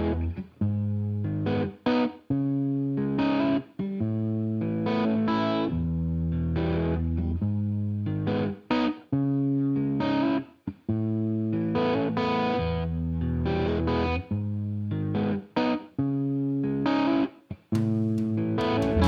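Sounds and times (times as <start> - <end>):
distorted electric guitar chords: 0.0 - 3.6, 17.7 - 19.0.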